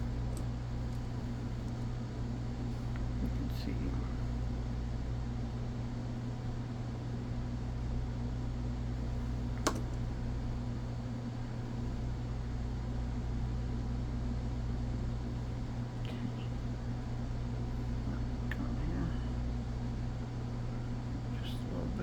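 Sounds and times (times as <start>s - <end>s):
steady low hum: 0.0s - 22.0s
sharp click: 9.6s - 10.0s.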